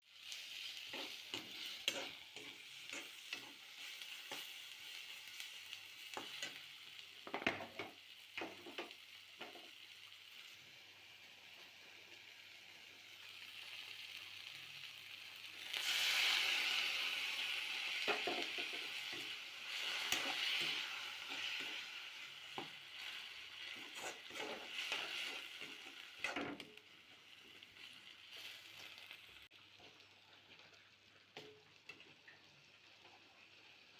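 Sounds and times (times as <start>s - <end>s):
food sizzling in hot oil: 0.0s - 33.9s
spatula scraping a pan: 0.2s - 4.6s, 18.0s - 26.7s.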